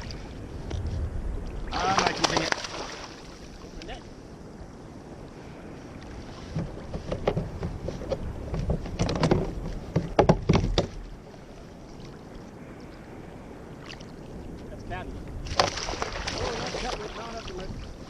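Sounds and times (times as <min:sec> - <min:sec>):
water splashing: 0:01.5 - 0:04.1, 0:13.7 - 0:18.0
knocks and clatter against hull: 0:06.4 - 0:11.2.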